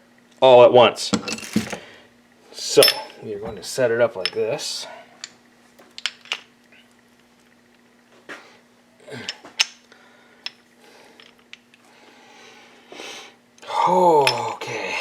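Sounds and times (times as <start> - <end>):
faint steady hum: 0.0 - 15.0
metal parts clicking and clinking: 1.1 - 1.8, 2.8 - 3.2.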